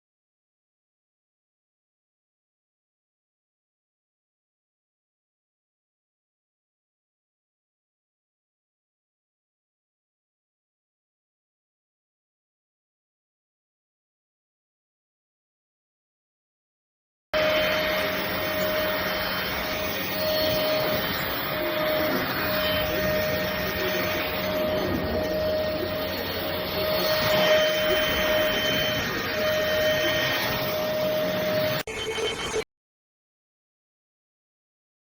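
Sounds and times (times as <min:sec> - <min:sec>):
stick vacuum cleaner whining: 0:17.4 - 0:32.5.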